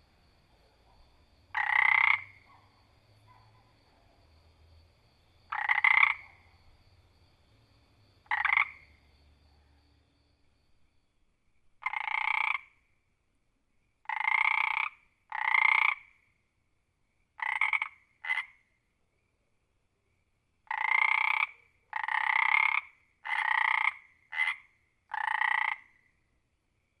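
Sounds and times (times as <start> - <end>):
frog croaking: 0.0 - 4.4, 5.3 - 7.1, 8.1 - 9.9, 11.8 - 12.9, 14.0 - 16.2, 17.4 - 18.7, 20.6 - 26.2.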